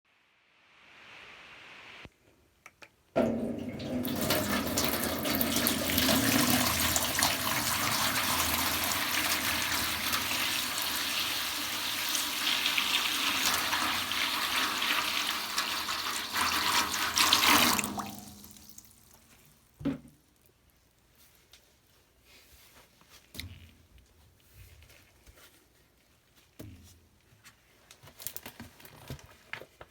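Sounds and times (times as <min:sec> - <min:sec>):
water running from a tap: 0:03.2 - 0:19.2.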